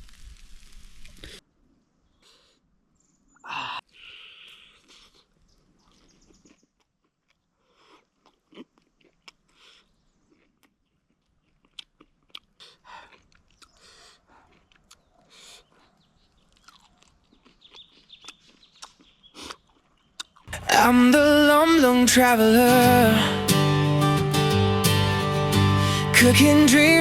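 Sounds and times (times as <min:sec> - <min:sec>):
person chewing food: 0:04.7 - 0:20.9.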